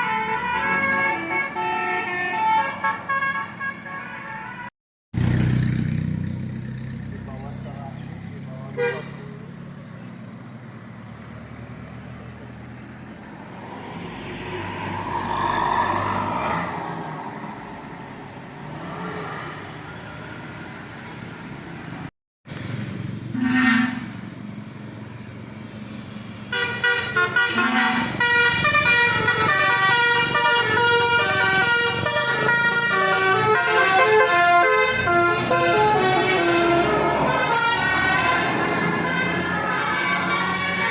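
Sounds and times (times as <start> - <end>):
multi-tone air horn melody: 0.0 - 4.7, 23.4 - 24.2, 26.5 - 40.9
bus passing: 0.0 - 40.9
short horn blast: 23.3 - 24.2, 26.5 - 40.9.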